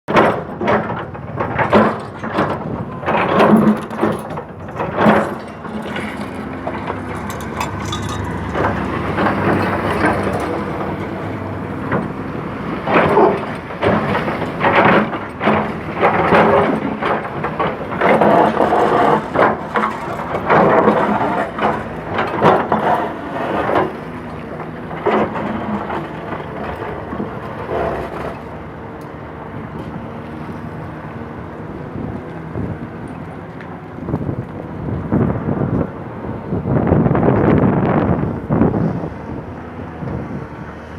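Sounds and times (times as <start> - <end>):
bucket cracking and scraping: 0.1 - 28.7
excavator engine running: 0.1 - 40.9.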